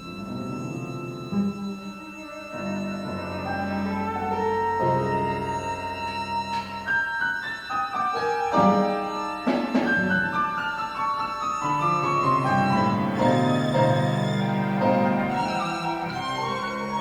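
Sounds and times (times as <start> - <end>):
piano playing: 0.0 - 17.0
bowed strings: 11.6 - 17.0.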